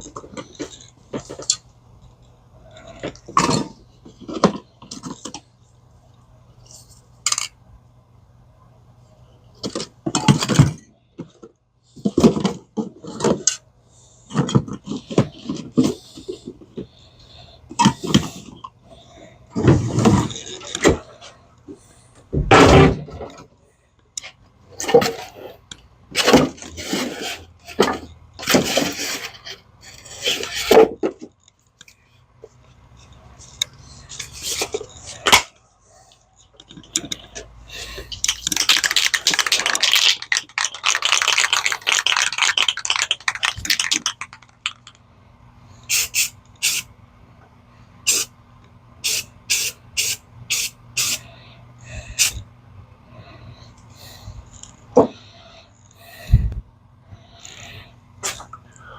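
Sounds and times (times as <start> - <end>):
small parts and tools clattering: 0.0 - 5.5, 6.6 - 7.6, 9.6 - 13.6, 14.2 - 17.1, 17.7 - 21.8, 22.5 - 32.0, 32.6 - 45.1.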